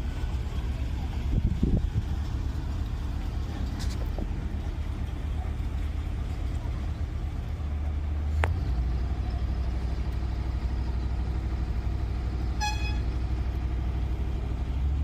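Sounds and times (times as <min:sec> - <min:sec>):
heavy engine droning: 0:00.0 - 0:15.0
short high horn beep: 0:12.6 - 0:13.1.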